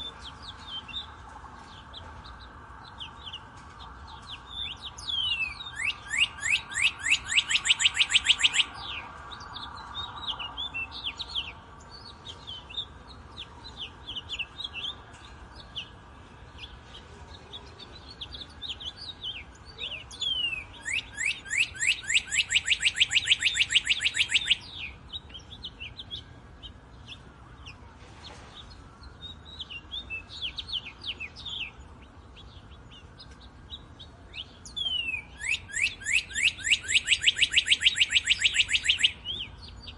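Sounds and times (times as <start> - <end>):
bird fast trills: 20.2 - 26.2, 34.6 - 39.4.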